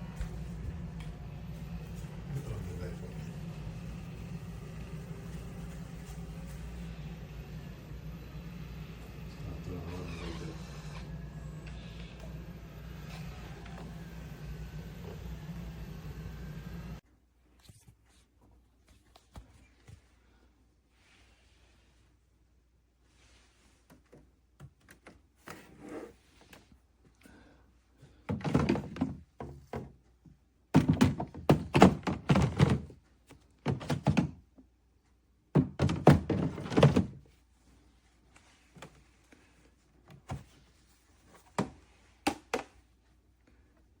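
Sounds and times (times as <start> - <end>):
knocks and thunks: 30.7 - 33.0.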